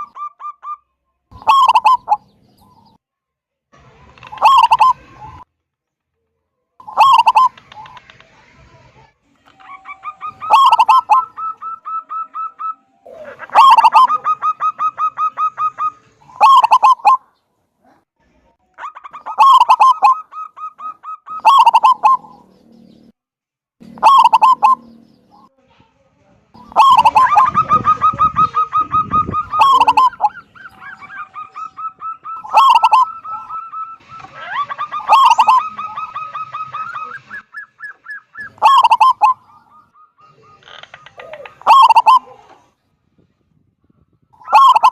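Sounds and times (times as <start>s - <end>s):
dove cooing: 1.4s - 2.3s, 4.3s - 5.0s, 6.8s - 8.0s, 9.5s - 17.2s, 18.8s - 22.6s, 23.8s - 25.0s, 26.6s - 42.7s, 44.4s - 44.9s.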